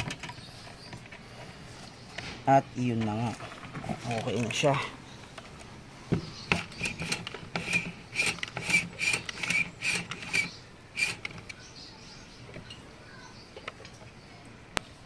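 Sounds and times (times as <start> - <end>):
squeaky scraping strokes: 6.4 - 11.5.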